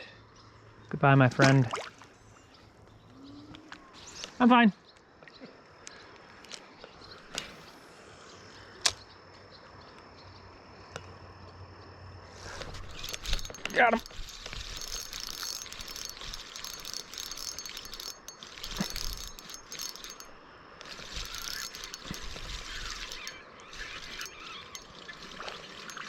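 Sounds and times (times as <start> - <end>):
fishing reel gears ticking: 12.4 - 26.0.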